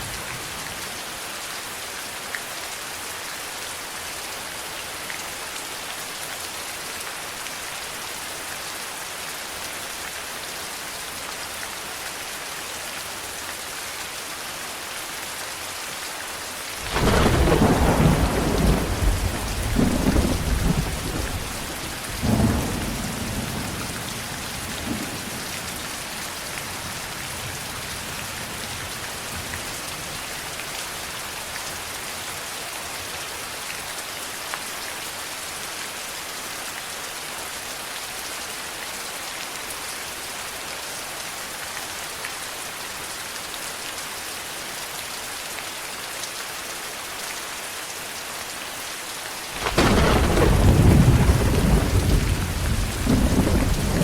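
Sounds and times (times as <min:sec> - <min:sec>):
heavy rain: 0:00.0 - 0:54.0
thunder rumbling: 0:16.8 - 0:25.5, 0:49.6 - 0:54.0.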